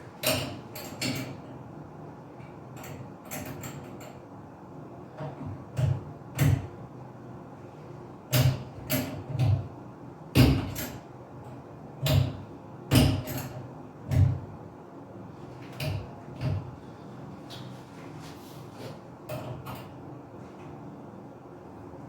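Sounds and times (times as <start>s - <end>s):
knocks and clunks on shower head: 12.0s - 14.5s.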